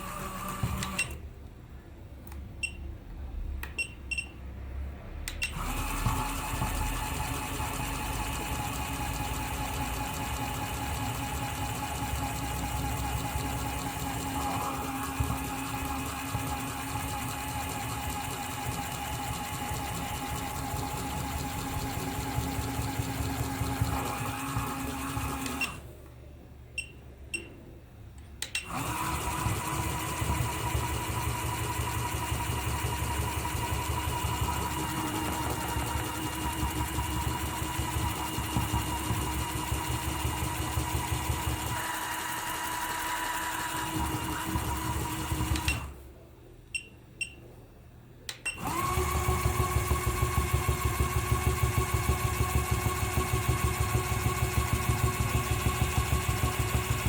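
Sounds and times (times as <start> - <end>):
clicks: 48.3 - 48.6.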